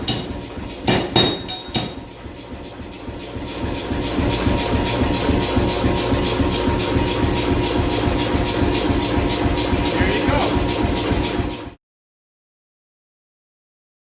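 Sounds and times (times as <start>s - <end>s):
power hammer striking: 0.0s - 2.1s
motor drone: 3.1s - 11.8s.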